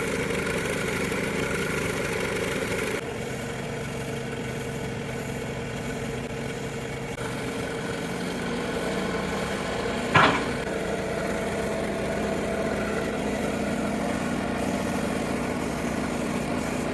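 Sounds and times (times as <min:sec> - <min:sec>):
engine running steadily: 0:00.0 - 0:16.9
sharp metallic clank: 0:10.1 - 0:10.7.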